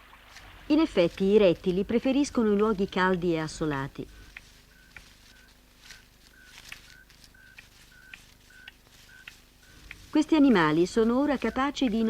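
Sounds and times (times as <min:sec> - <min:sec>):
short steady chirps: 0:04.1 - 0:12.0.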